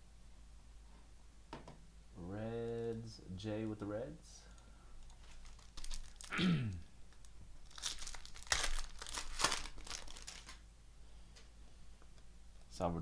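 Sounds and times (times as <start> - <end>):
plastic wrapping crinkling: 5.0 - 6.4, 7.1 - 10.6.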